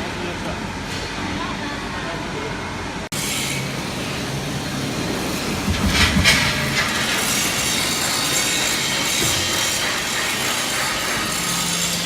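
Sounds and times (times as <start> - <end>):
rough grinding burst: 3.5 - 12.0
plate rolling machine running: 3.6 - 12.0.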